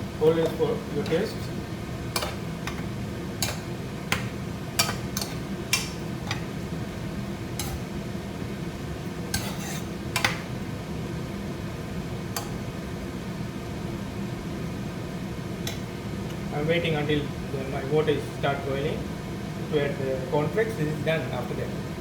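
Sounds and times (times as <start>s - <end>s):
steady low hum: 0.0s - 22.0s
spoon clinking against pot: 2.2s - 6.5s, 7.6s - 7.9s, 9.3s - 10.4s.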